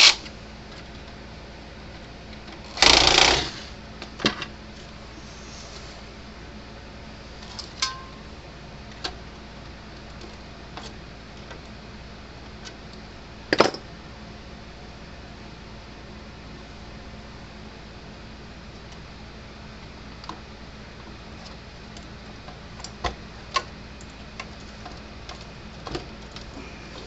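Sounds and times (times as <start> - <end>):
faint steady hum: 0.0 - 27.0
scrape or rustle: 4.8 - 6.1.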